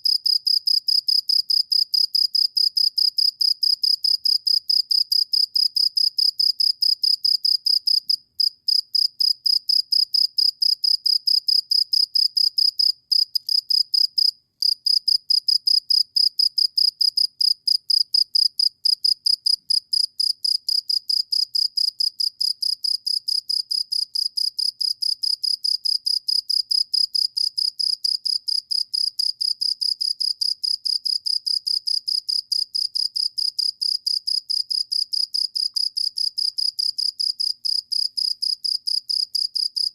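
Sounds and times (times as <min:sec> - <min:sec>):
insect chirping: 0:00.2 - 0:39.9.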